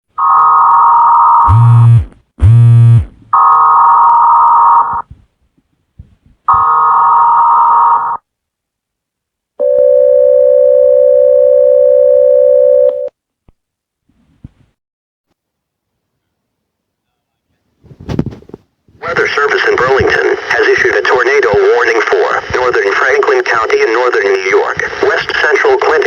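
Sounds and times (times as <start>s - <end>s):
steady attention tone: 1.4s - 5.1s
low buzz: 1.5s - 3.3s.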